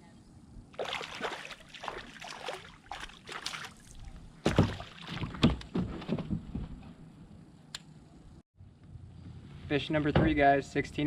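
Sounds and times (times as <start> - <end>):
water splashing: 0.7 - 5.4.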